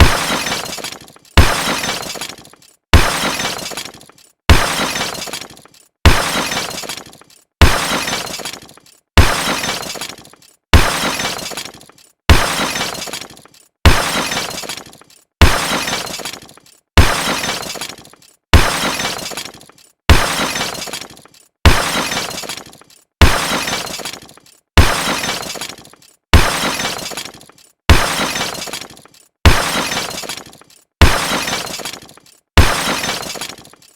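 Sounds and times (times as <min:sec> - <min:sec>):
crash smash: 0:00.0 - 0:02.4.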